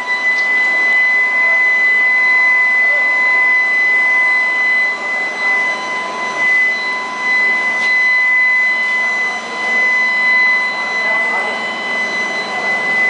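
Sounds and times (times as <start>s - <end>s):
induction furnace electrical whine: 0.0s - 13.0s.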